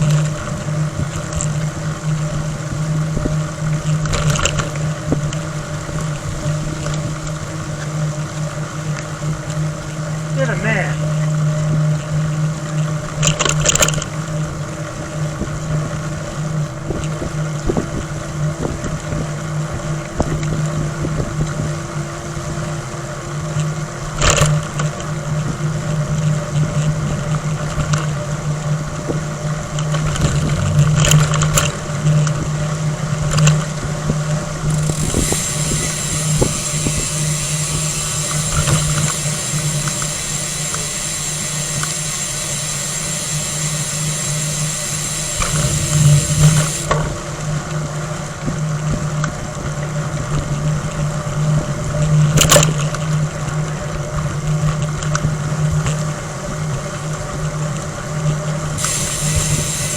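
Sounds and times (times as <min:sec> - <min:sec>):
low mechanical hum: 0:00.0 - 0:59.9
road noise: 0:33.6 - 0:47.0
scattered clicks: 0:34.6 - 0:47.0
high hiss: 0:34.7 - 0:47.0, 0:58.8 - 0:59.9.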